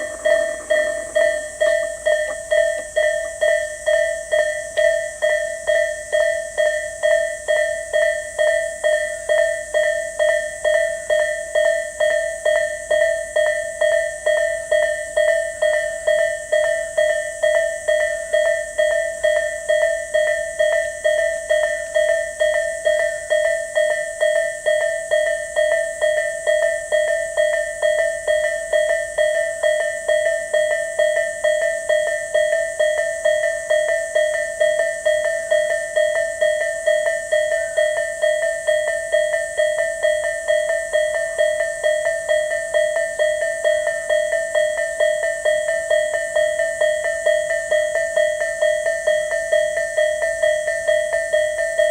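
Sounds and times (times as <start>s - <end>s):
electronic level-crossing bell: 0.0s - 6.0s, 27.5s - 51.9s.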